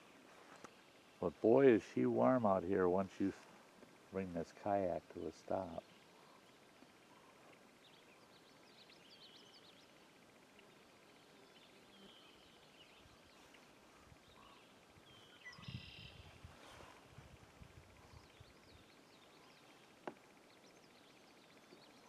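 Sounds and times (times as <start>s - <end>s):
faint bird chirps: 5.8s - 16.8s, 18.0s - 22.0s.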